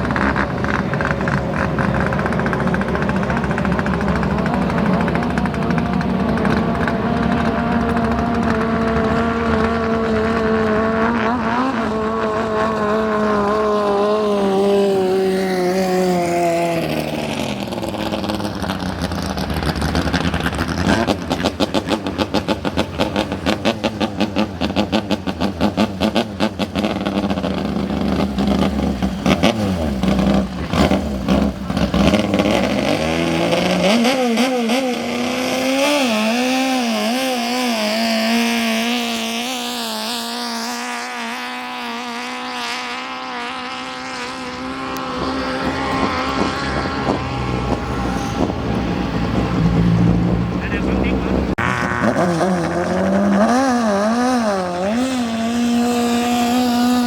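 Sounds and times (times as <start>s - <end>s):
speedboat engines at high revs: 0.0s - 57.0s
steady engine note: 0.0s - 57.0s.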